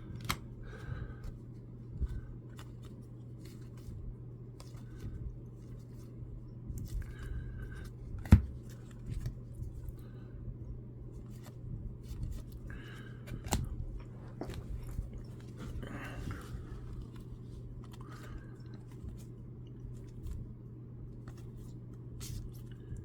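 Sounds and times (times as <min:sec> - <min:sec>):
trading cards being shuffled: 0:00.0 - 0:00.5
low steady hum: 0:00.0 - 0:23.0.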